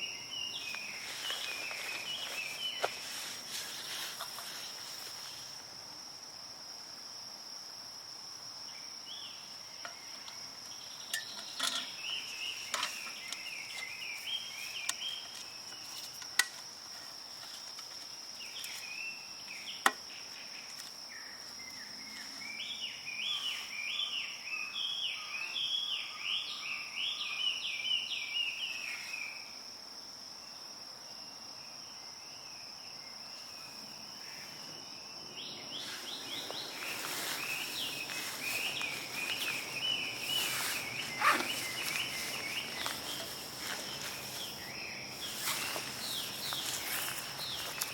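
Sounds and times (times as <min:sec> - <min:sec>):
bird chirping: 0:09.1 - 0:16.0, 0:35.4 - 0:47.9.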